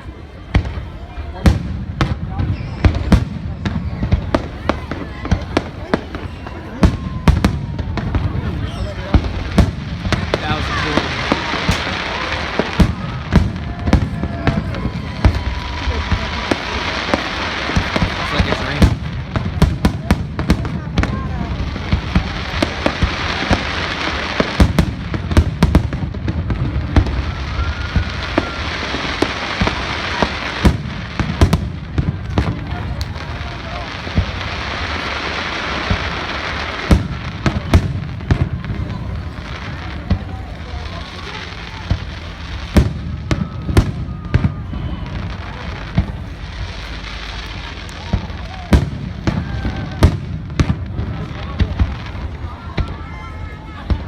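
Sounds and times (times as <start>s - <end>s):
fireworks bangs: 0.0s - 54.0s
fireworks crackling: 0.0s - 54.0s
faint short whistle: 2.4s - 3.1s, 27.5s - 28.7s.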